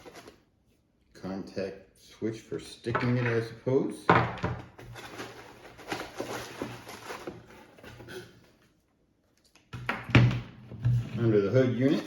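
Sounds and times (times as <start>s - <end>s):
packaging rustling and clicking: 4.8s - 8.0s.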